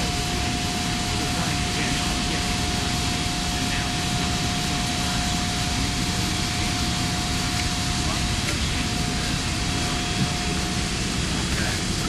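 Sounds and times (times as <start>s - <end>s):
constant mid-pitched whine: 0.0s - 12.0s
machinery hiss and rumble: 0.0s - 12.0s.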